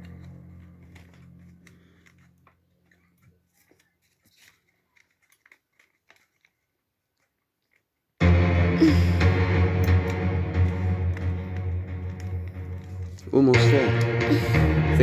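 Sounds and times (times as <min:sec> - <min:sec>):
background music: 0:00.0 - 0:03.0, 0:08.2 - 0:15.0
faint clicks and taps: 0:00.0 - 0:08.1
loud music: 0:08.2 - 0:15.0.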